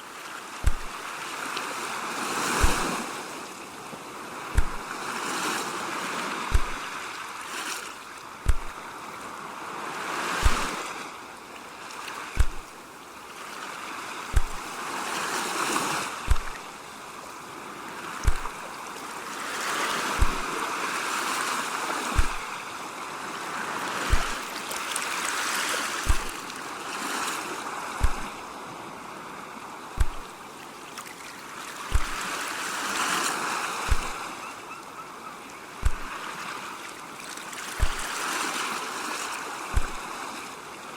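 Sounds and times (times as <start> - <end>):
ocean waves washing: 0.0 - 40.9
low thump: 0.6 - 1.0, 2.6 - 2.9, 4.6 - 4.8, 6.5 - 6.8, 8.5 - 8.8, 10.4 - 10.7, 12.4 - 12.7, 14.4 - 14.7, 16.3 - 16.6, 18.2 - 18.6, 20.2 - 20.5, 22.2 - 22.4, 24.1 - 24.4, 26.1 - 26.4, 28.0 - 28.4, 30.0 - 30.3, 31.9 - 32.2, 33.9 - 34.2, 35.8 - 36.1, 37.8 - 38.1, 39.8 - 40.0.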